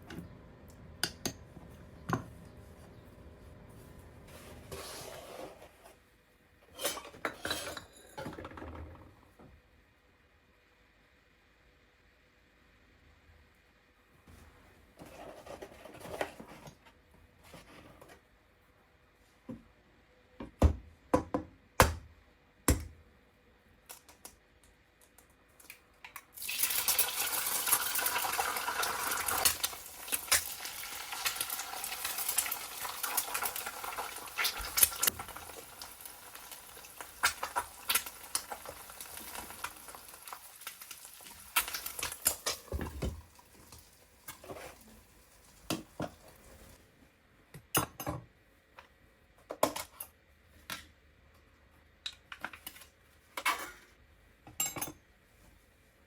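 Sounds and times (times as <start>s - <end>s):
frying sizzle in a pan: 26.3s - 46.8s.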